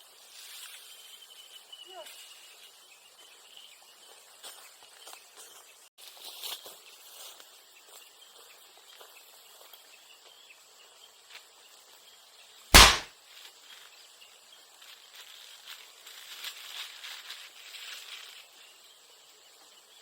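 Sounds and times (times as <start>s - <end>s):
bamboo bursting in fire: 12.8s - 13.1s.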